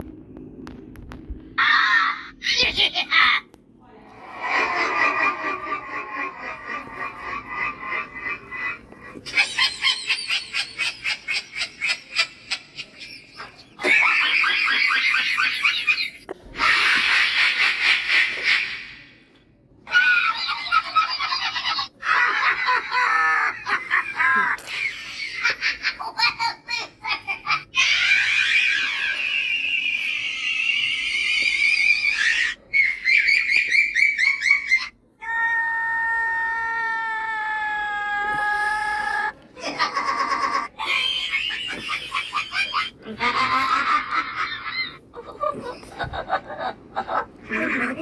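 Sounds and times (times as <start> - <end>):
rapid laugh pulses: 4.1 - 18.8
breathy hissy laugh: 4.1 - 19.0, 38.2 - 48.0.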